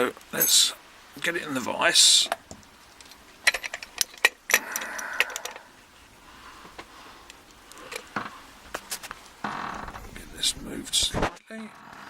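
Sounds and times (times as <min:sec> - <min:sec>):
metal rattle: 0:03.4 - 0:05.7.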